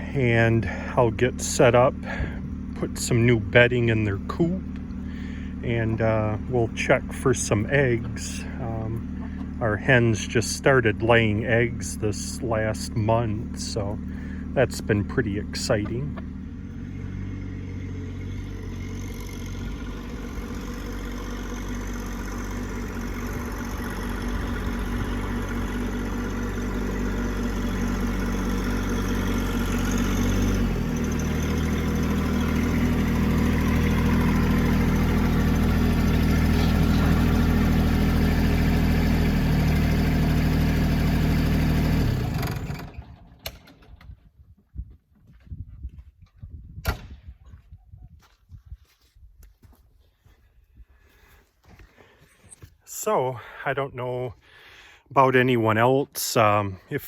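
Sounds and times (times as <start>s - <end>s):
motor vehicle engine running: 0.0s - 45.5s.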